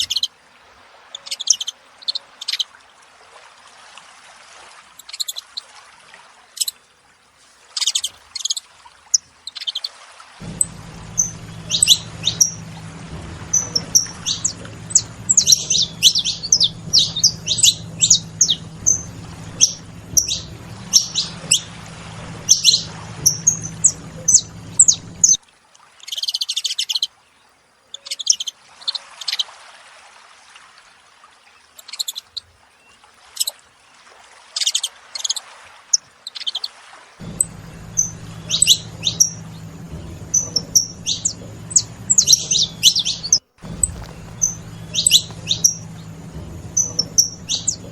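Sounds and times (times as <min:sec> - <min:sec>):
finches chirping: 0:10.4 - 0:25.4, 0:37.2 - 0:47.9.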